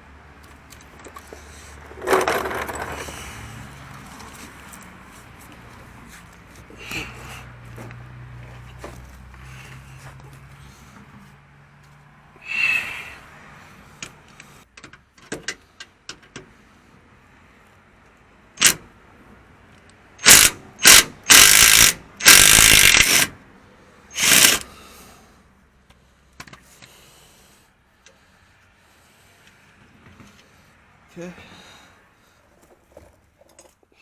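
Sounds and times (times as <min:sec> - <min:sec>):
impact wrench hammering: 0:20.2 - 0:23.4, 0:24.2 - 0:24.6.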